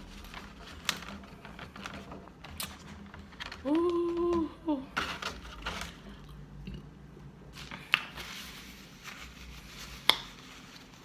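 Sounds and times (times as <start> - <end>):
soft eating sounds: 5.6 - 11.0.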